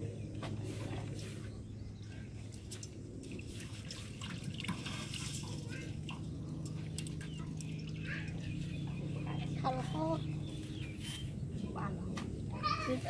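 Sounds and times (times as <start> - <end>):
steady low hum: 0.0 - 13.0
water dripping and splashing: 2.4 - 9.0.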